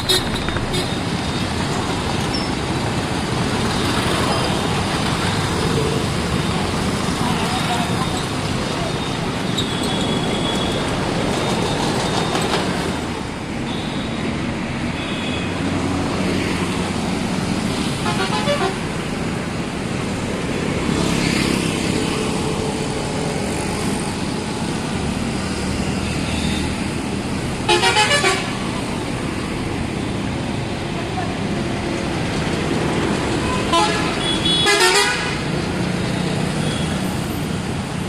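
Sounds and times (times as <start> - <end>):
traffic noise: 0.0 - 38.0
bus horn blasts: 18.0 - 18.8, 27.7 - 28.6, 33.5 - 35.4.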